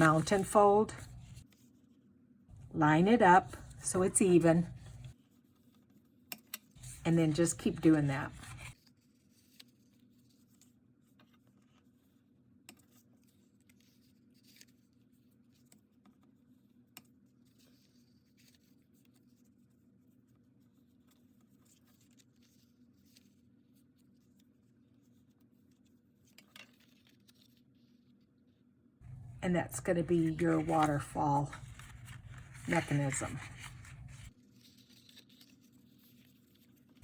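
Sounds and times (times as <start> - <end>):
cardstock being folded and creased: 6.8 - 10.6, 25.8 - 28.0, 29.0 - 37.0.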